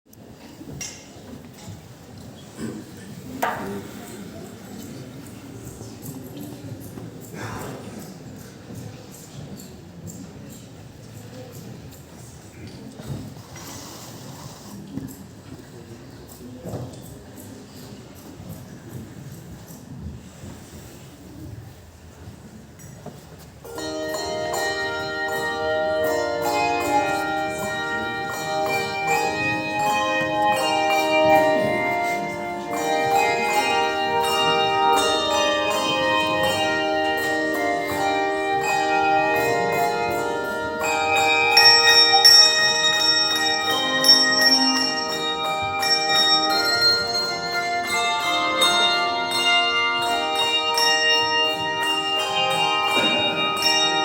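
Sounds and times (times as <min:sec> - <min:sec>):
bell ensemble playing: 0:23.7 - 0:54.0.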